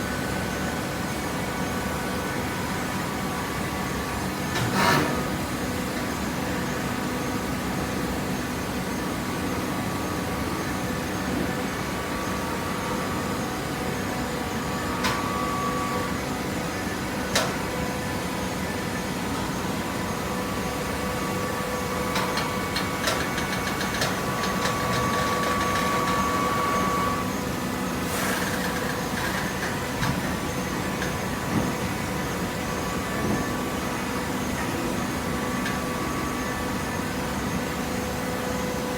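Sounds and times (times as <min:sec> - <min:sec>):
baler mechanical hum: 0:00.0 - 0:38.9.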